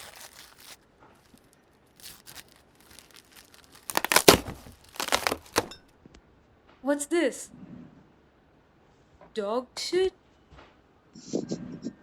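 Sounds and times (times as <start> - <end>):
wrapping paper tearing and rustling: 0.0 - 5.8.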